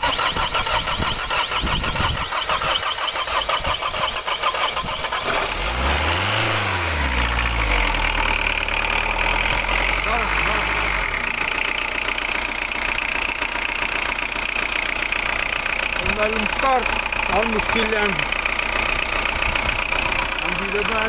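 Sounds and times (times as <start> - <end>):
diesel engine cranking and idling: 0.0 - 21.0.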